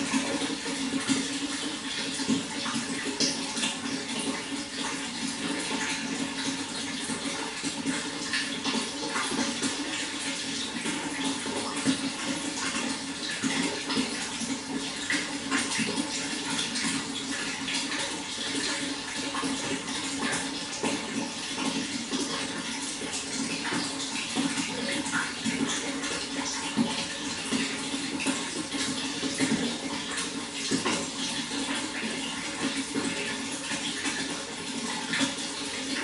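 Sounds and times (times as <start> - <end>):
running water splashing: 0.0 - 36.0.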